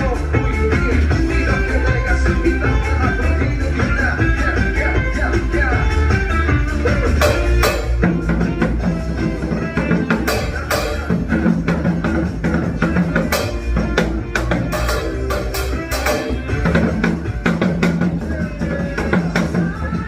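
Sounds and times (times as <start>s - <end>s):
backing music with bass and beat: 0.0s - 20.0s
drum struck in sharp hits: 7.2s - 8.9s, 9.7s - 18.2s.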